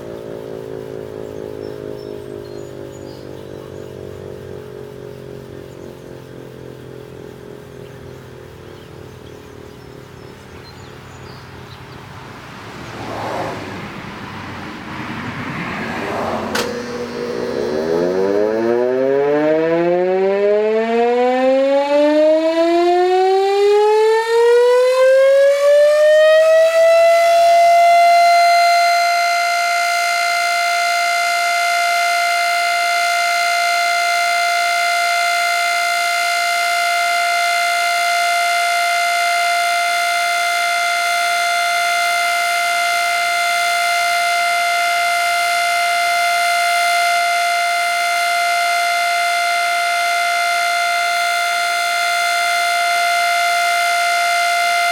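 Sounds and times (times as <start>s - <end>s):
electric siren winding up: 16.0s - 54.9s.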